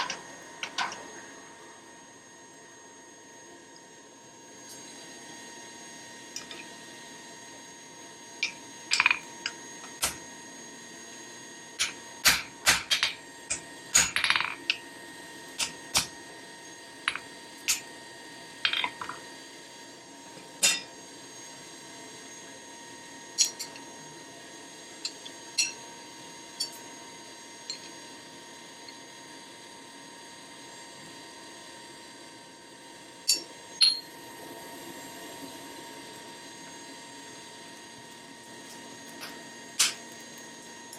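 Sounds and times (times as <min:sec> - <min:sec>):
steady hum: 0:00.0 - 0:31.2
hammer striking anvil: 0:33.3 - 0:34.0.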